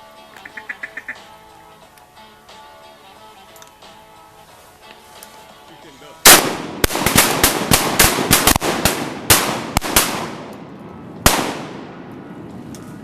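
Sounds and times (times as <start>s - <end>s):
echoing shotgun blasts: 6.2s - 12.2s.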